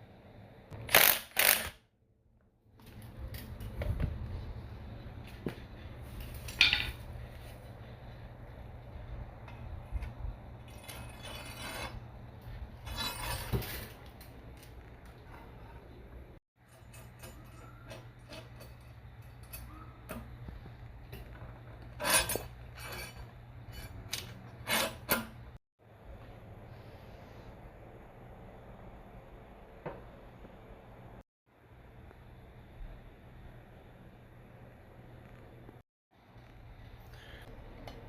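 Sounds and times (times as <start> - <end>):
steady low hum: 2.1 - 24.6
metal parts clinking and scraping: 16.6 - 19.8.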